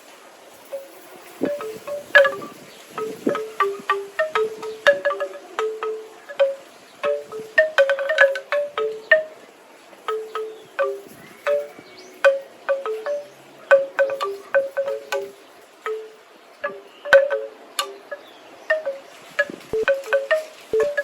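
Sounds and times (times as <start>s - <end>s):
bamboo wind chimes clacking: 0.0s - 21.0s
faint rustle of wind: 0.0s - 21.0s.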